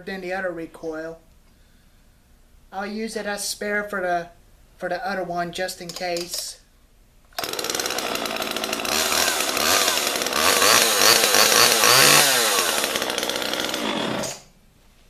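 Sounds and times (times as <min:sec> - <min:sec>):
chainsaw starting and revving: 0:07.4 - 0:14.6.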